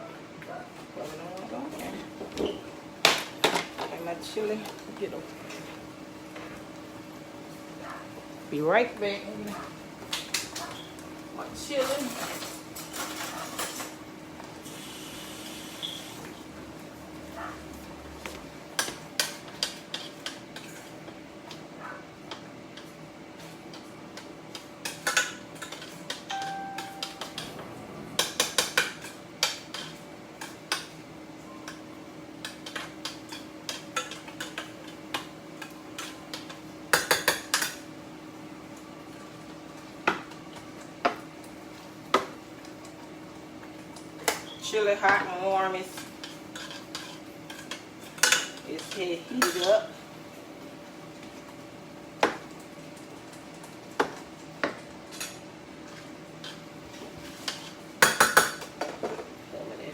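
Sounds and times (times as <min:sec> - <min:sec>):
utensils clinking on dishes: 0:11.8 - 0:14.0, 0:24.8 - 0:27.6, 0:45.9 - 0:49.9
steady low hum: 0:26.3 - 0:33.8.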